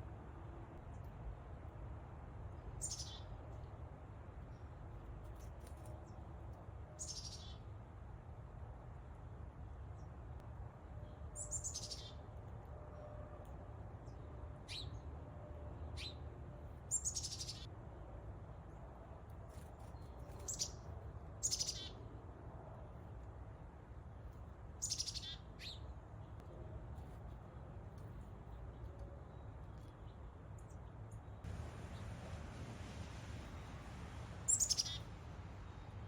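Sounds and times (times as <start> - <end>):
low background rumble: 27.4 - 36.0
chickadee chirping: 34.5 - 35.1.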